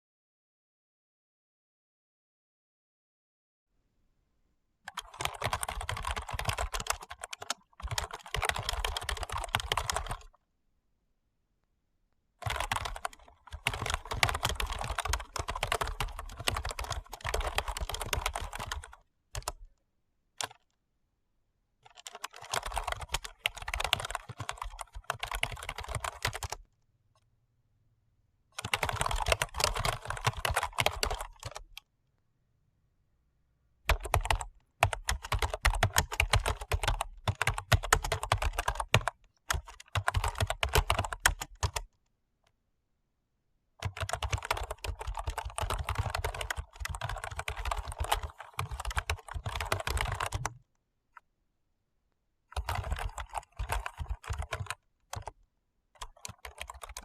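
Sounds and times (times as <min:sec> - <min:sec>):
keyboard typing: 0:04.9 - 0:10.4, 0:12.4 - 0:19.7, 0:20.4 - 0:20.7, 0:21.8 - 0:26.6, 0:28.6 - 0:31.8, 0:33.9 - 0:41.9, 0:43.8 - 0:50.7, 0:52.5 - 0:55.4, 0:56.0 - 0:57.0.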